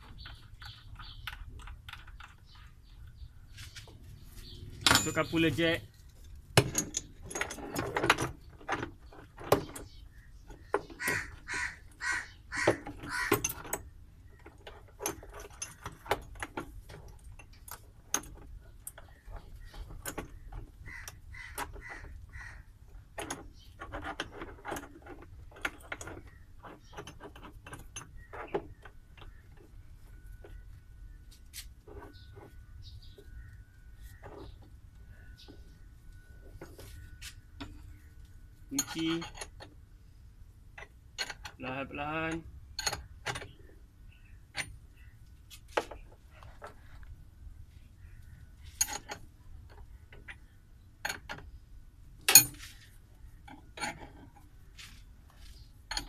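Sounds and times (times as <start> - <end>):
metal tools clinking on metal: 4.4 - 8.4, 38.6 - 39.7, 52.3 - 52.7, 53.5 - 54.5
harsh squawks: 11.0 - 13.4.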